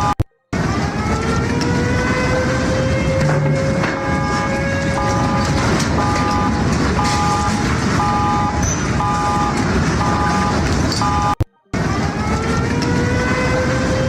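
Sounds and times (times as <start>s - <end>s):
alarm tone beeping: 0.0s - 0.4s, 3.9s - 11.8s
steady loud noise: 0.0s - 14.0s.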